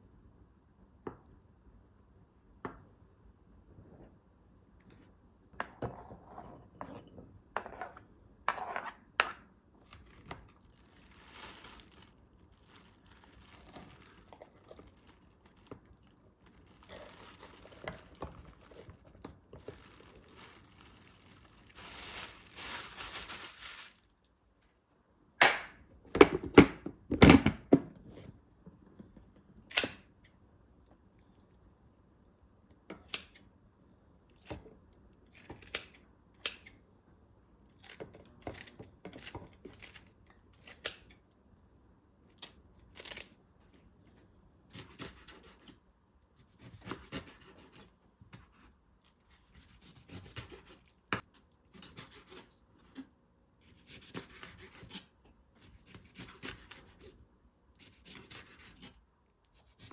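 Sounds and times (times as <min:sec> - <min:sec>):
packaging crinkling: 0:09.9 - 0:24.3.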